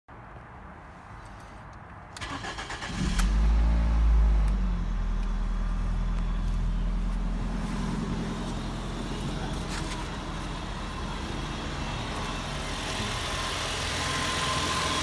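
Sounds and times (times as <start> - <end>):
car engine starting and idling: 2.1 - 15.0.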